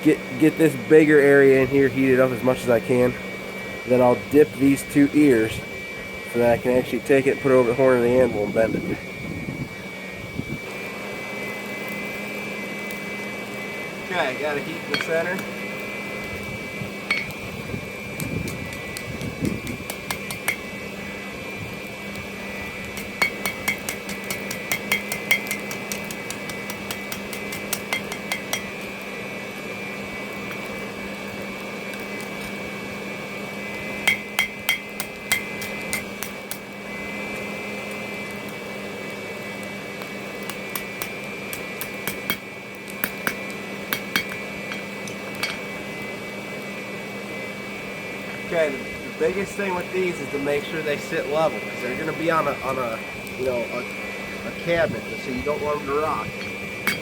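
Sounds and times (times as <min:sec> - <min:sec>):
steady hum: 0:00.0 - 0:57.0
hammer striking steel on anvil: 0:14.9 - 0:15.1, 0:17.1 - 0:17.4, 0:19.9 - 0:20.6, 0:23.2 - 0:26.1, 0:26.7 - 0:28.7, 0:34.0 - 0:36.3, 0:41.8 - 0:42.4, 0:43.0 - 0:44.8, 0:56.4 - 0:57.0.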